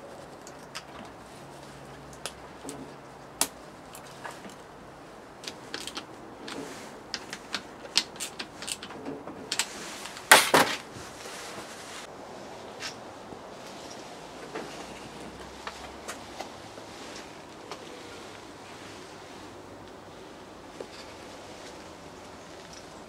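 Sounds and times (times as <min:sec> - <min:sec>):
hand tools clinking: 0:05.4 - 0:10.8, 0:20.8 - 0:23.0.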